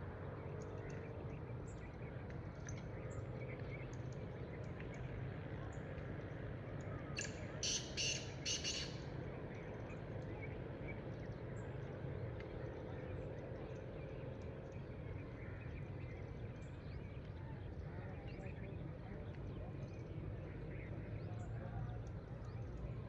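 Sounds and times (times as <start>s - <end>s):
low background hum: 0.0s - 23.0s
faint bird chirps: 6.8s - 9.1s
francolin harsh calls: 7.2s - 9.1s.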